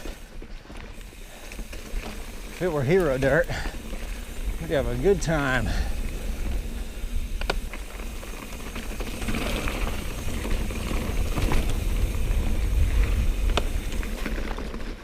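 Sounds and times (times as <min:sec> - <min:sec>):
bike rattling: 0:00.0 - 0:15.0
bike tyres crunching on dirt: 0:00.0 - 0:15.0
wind rumble on microphone: 0:09.4 - 0:14.3.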